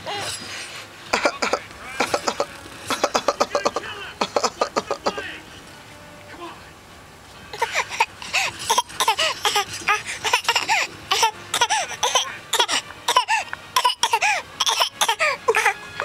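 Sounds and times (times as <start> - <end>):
people coughing: 1.1 - 5.4, 7.6 - 15.8
people laughing: 1.2 - 5.2.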